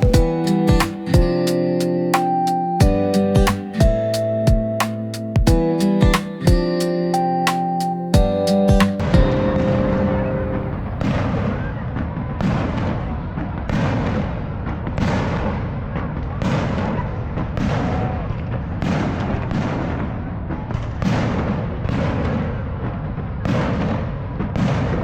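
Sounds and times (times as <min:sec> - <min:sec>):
fireworks bangs with rumbling echo: 0:11.9 - 0:25.0.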